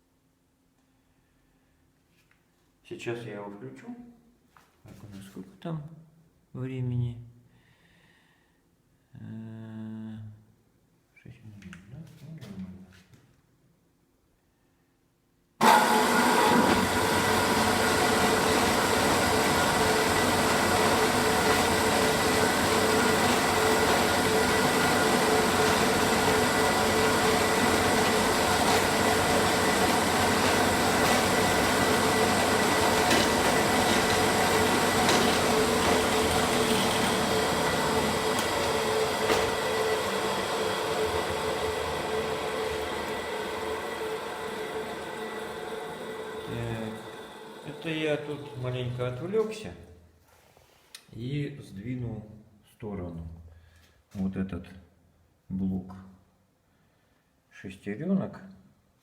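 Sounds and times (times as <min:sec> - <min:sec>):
sharpening machine running: 0:15.6 - 0:49.1.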